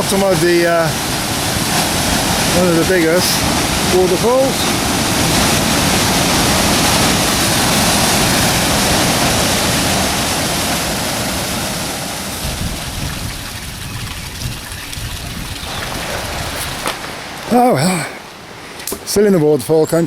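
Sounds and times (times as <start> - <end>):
waterfall rushing: 0.0 - 12.6, 15.6 - 18.5.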